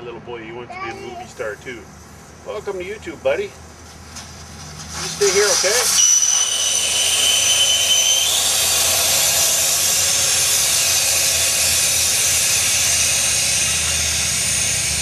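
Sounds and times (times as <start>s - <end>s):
loud steady hiss: 1.0s - 15.0s
faint high whine: 4.2s - 15.0s.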